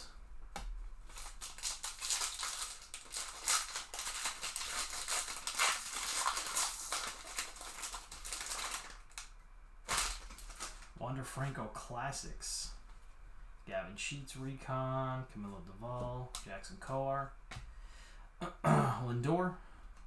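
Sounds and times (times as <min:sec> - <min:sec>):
cards rustling and clicking: 0:00.6 - 0:09.3, 0:09.9 - 0:11.0
plastic wrapper crinkling: 0:01.0 - 0:11.0.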